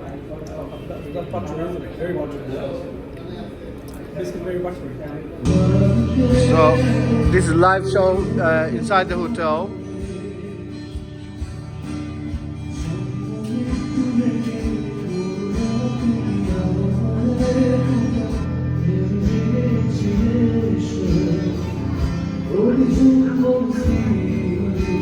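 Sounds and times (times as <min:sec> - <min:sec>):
live music with singer: 0:05.5 - 0:25.0.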